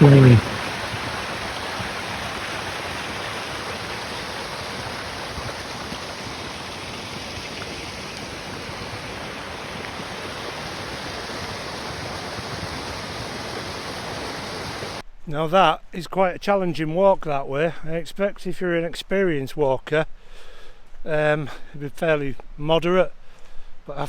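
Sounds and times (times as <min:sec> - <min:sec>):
stream running: 0:00.0 - 0:15.0.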